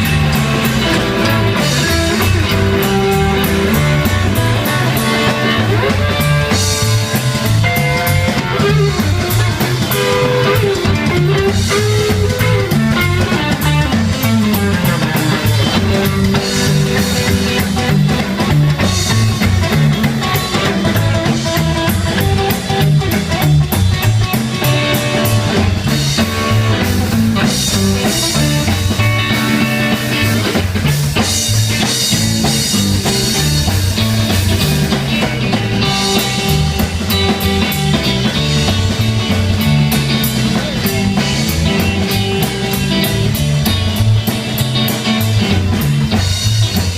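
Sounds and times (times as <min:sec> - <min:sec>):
bass line: 0:00.0 - 0:46.9
drum kit with cymbals: 0:00.0 - 0:46.9
lead guitar: 0:00.0 - 0:46.9.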